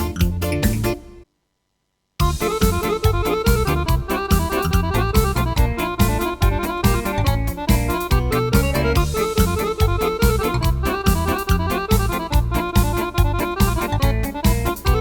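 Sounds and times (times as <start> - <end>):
keyboard accompaniment with drum beat: 0.0 - 1.2, 2.2 - 15.0.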